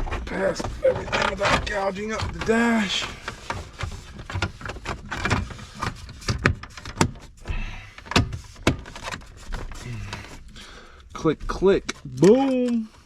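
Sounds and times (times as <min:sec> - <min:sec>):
plastic trim clicking and knocking: 0:00.0 - 0:10.4.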